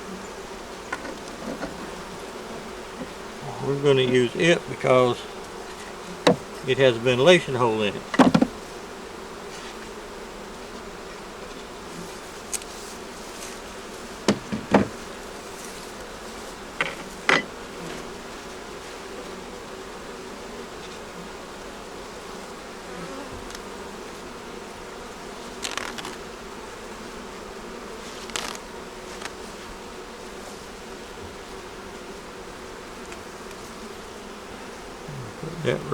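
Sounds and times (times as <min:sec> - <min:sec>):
bees buzzing: 0:00.0 - 0:35.9
wooden hive parts knocking: 0:05.8 - 0:06.6, 0:08.0 - 0:08.6, 0:14.2 - 0:15.0.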